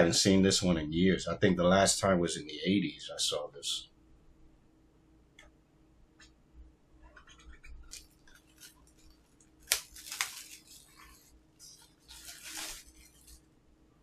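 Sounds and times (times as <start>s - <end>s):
plastic and cardboard rustle: 7.8s - 13.5s.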